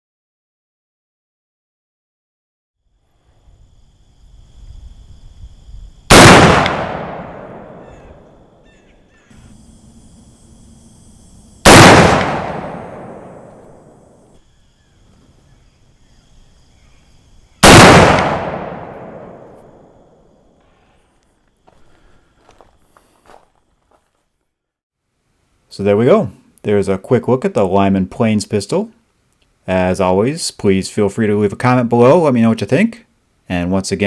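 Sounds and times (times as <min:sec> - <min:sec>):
loud pistol shots: 0:06.1 - 0:08.5, 0:11.6 - 0:14.0, 0:17.6 - 0:19.9.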